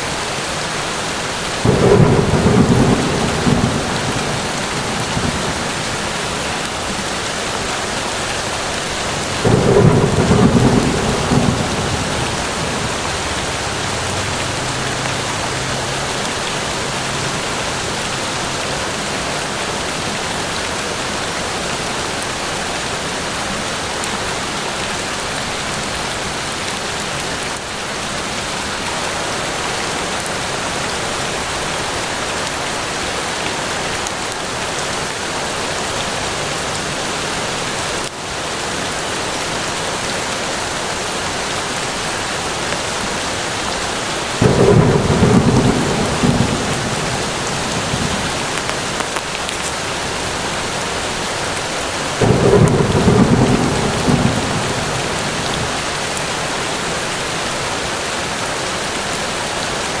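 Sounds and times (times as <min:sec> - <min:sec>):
heavy rain falling: 0:00.0 - 1:00.0
thunder rumbling: 0:01.4 - 0:18.9, 0:44.3 - 0:56.8.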